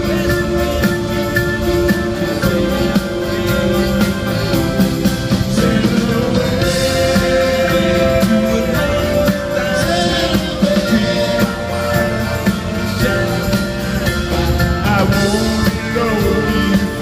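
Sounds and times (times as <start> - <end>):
drum kit beat: 0.0 - 17.0
live rock band playing: 0.0 - 17.0.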